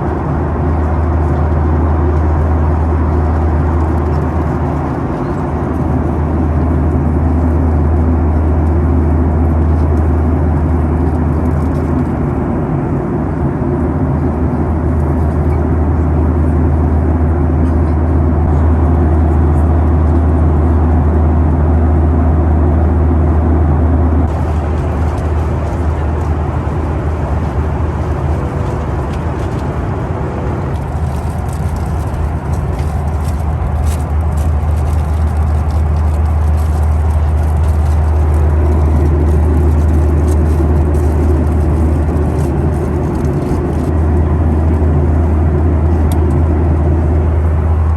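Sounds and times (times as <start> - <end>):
jet engine drone: 0.0 - 47.9
air rushing past fuselage: 24.3 - 32.5.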